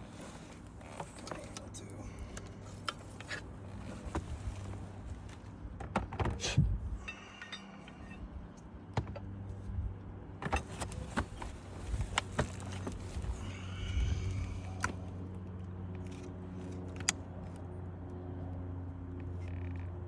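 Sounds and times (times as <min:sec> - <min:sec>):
steady low hum: 0:00.0 - 0:20.0
hand tools clinking and tapping: 0:07.0 - 0:08.2.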